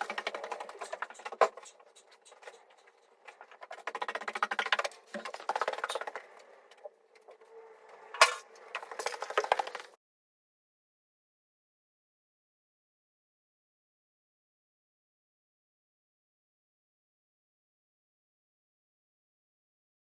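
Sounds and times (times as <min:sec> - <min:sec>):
rapid clicking: 0:00.0 - 0:06.8.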